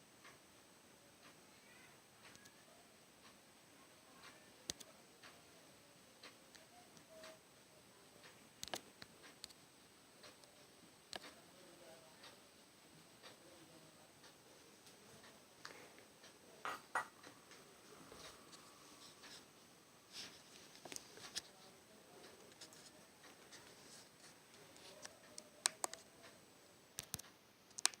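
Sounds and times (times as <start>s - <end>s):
faint scattered clicks: 1.2s - 3.4s, 4.1s - 5.5s, 8.2s - 9.6s, 10.2s - 12.4s, 20.1s - 28.0s.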